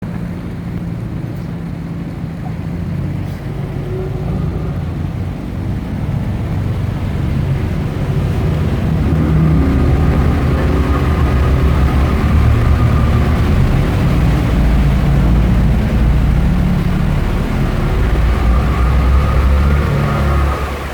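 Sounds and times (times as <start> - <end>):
boat engine humming: 0.0 - 20.9.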